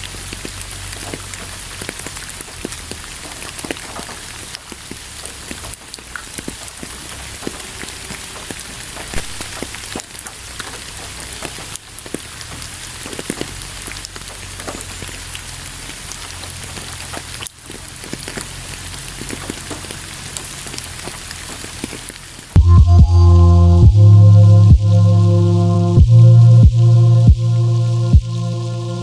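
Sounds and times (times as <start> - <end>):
steady rain: 0.0 - 22.6.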